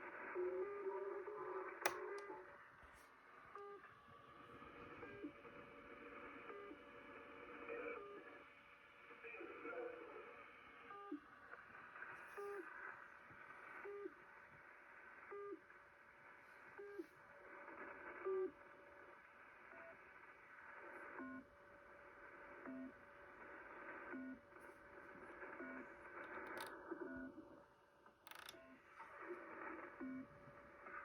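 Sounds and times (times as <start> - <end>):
faint radio beeps: 0.1 - 2.6, 3.4 - 3.9, 16.5 - 27.5, 28.3 - 31.0.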